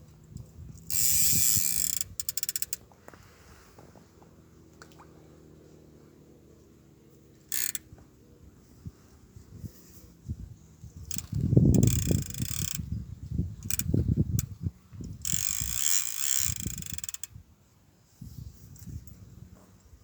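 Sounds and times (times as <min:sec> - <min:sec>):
fishing reel ratchet buzzing: 0:00.9 - 0:02.8, 0:07.5 - 0:07.9, 0:11.1 - 0:12.9, 0:13.6 - 0:14.5, 0:15.2 - 0:17.4.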